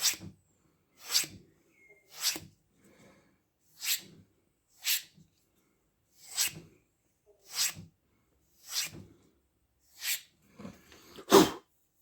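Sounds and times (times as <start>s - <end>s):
knife stropping strokes: 3.7s - 4.2s, 4.8s - 5.2s, 6.1s - 6.7s, 7.4s - 7.8s, 8.6s - 9.0s, 9.9s - 10.3s.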